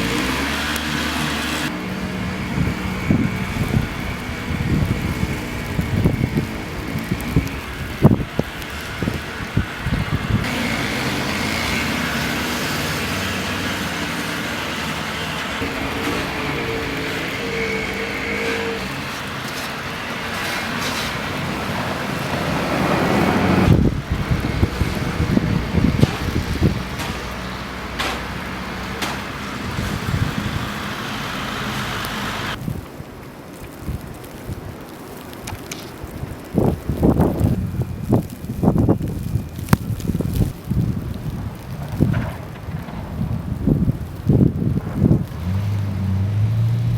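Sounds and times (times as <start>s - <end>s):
vehicle engine hum: 0.0s - 32.6s, 36.8s - 46.9s
constant rushing noise: 0.0s - 46.9s
sharp knocks: 29.0s - 29.4s.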